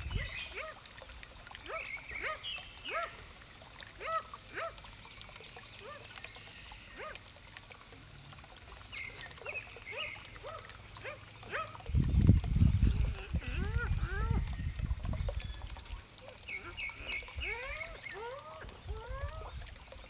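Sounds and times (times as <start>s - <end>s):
bird calls rising and falling: 13.5s - 20.0s.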